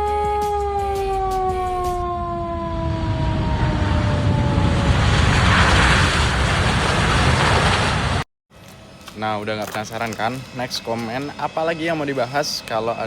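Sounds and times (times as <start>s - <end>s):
siren winding down: 0.0s - 5.6s
jet engine roar: 1.3s - 13.0s.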